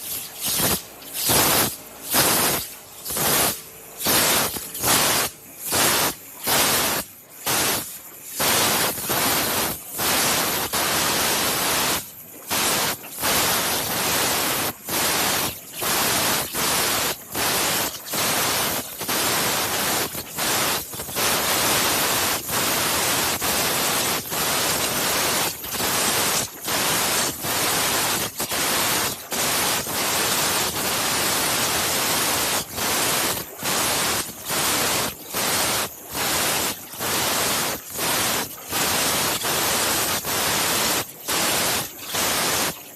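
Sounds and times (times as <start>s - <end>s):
waterjet cutter hissing: 0.0s - 42.9s.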